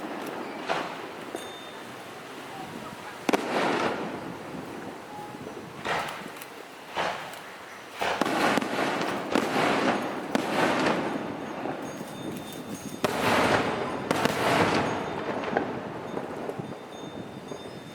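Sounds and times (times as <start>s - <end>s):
fireworks bursting: 0.0s - 17.9s.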